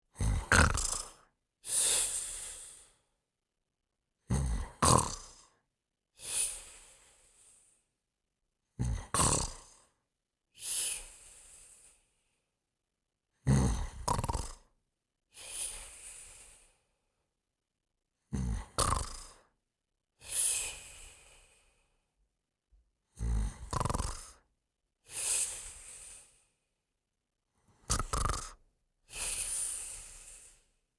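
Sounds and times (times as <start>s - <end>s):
person snoring: 0.1s - 3.1s, 4.2s - 5.6s, 8.7s - 10.0s, 10.6s - 12.2s, 13.4s - 16.9s, 18.2s - 19.6s, 20.2s - 22.0s, 23.0s - 26.6s, 27.6s - 30.8s
hissing out-breath: 29.1s - 30.7s.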